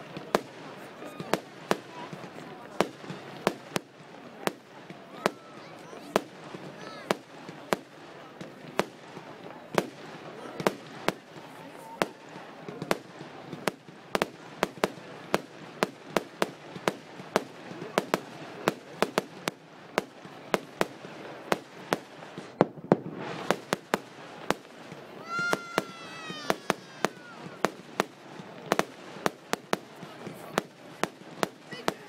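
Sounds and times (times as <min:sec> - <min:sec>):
firework bangs and cracks: 0:00.0 - 0:32.0
firework crackling: 0:00.0 - 0:32.0.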